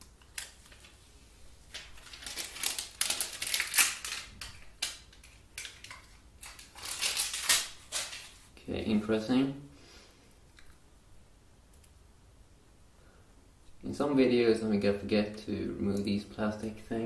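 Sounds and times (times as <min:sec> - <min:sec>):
plastic film crinkling: 0:00.2 - 0:01.0, 0:01.6 - 0:08.6.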